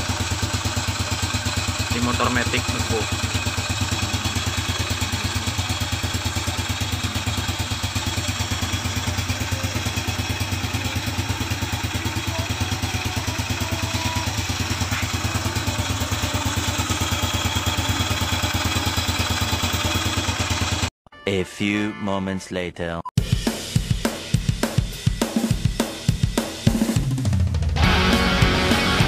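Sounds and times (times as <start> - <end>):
scooter idling with clatter: 0.0 - 20.9.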